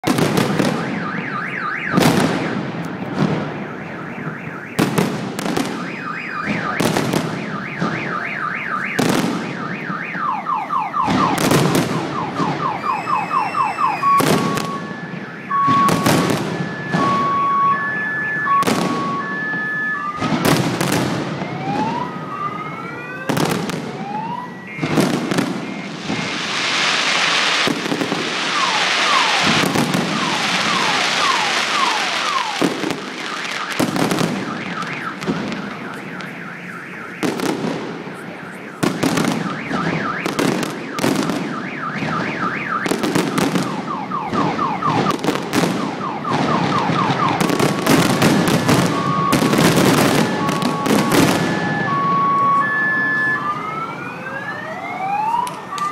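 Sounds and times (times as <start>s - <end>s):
fireworks booming: 0.0s - 10.2s, 10.9s - 53.5s
car alarms wailing: 0.0s - 55.9s
crackling shower of sparks: 24.8s - 36.7s.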